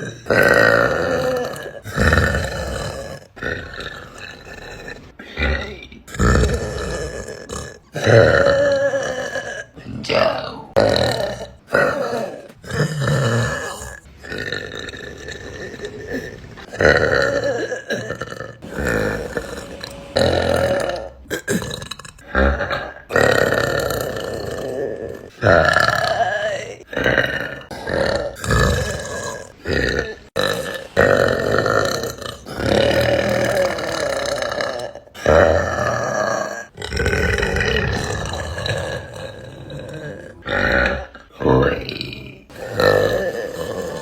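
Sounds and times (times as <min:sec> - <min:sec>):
woman burping: 0:15.6 - 0:36.6.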